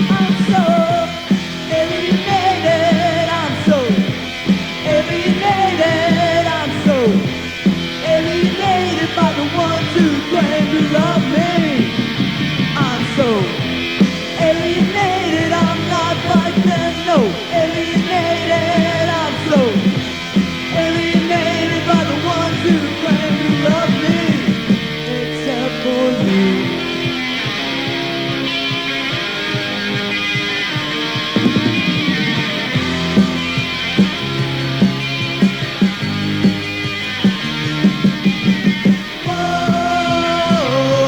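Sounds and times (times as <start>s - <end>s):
pop-punk band playing: 0.0s - 41.0s
wavering lead guitar line: 0.0s - 41.0s.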